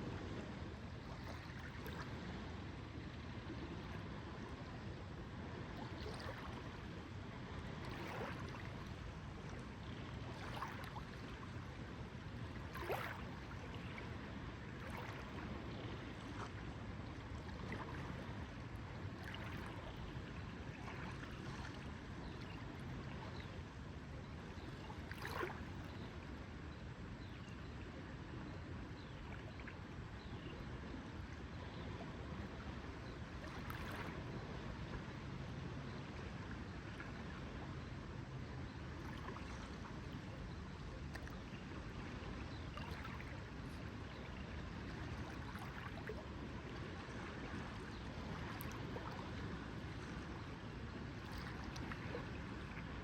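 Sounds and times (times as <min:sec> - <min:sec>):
low background wash: 0:00.0 - 0:53.0
small water splashes: 0:01.0 - 0:02.4, 0:05.6 - 0:11.8, 0:12.4 - 0:23.5, 0:24.5 - 0:26.1, 0:31.7 - 0:35.1, 0:38.7 - 0:53.0
lake water lapping: 0:05.6 - 0:11.8, 0:12.4 - 0:23.5, 0:24.5 - 0:26.2, 0:31.6 - 0:35.2, 0:38.8 - 0:53.0.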